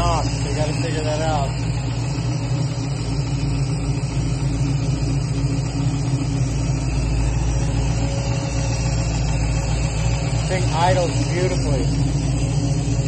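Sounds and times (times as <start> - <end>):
engine idling with a knock: 0.0 - 13.0.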